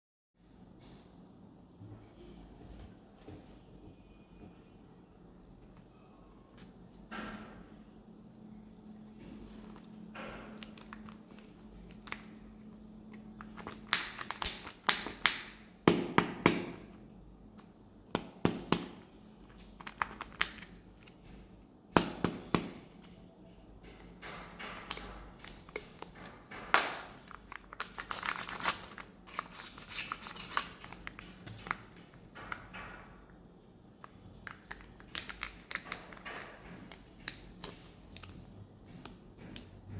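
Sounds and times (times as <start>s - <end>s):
plastic wrappers crinkling: 10.6s - 15.2s, 26.8s - 32.6s, 34.4s - 38.5s.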